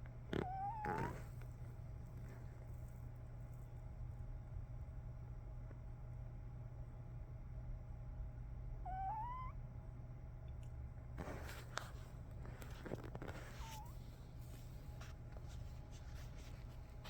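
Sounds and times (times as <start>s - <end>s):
puppy snoring: 0.3s - 1.4s.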